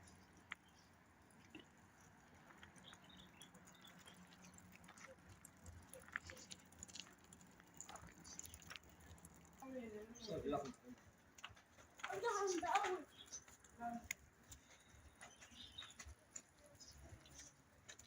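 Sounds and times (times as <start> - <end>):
small clicks and taps: 11.3 - 18.0.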